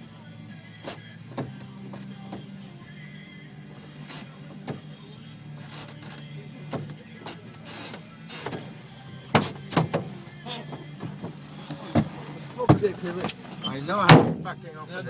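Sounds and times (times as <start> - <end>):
van door latch clicking and clunking: 0.8 - 2.6, 3.9 - 5.0, 5.6 - 14.6.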